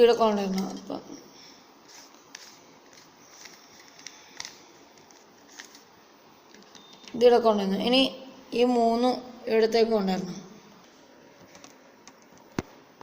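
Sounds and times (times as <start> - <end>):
puzzle cube plastic clicks: 2.3 - 5.9.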